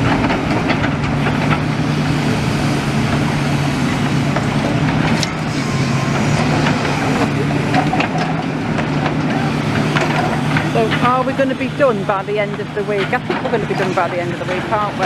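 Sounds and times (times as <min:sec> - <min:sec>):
excavator diesel engine running: 0:00.0 - 0:15.0
rubble knocking and clattering: 0:06.4 - 0:11.4.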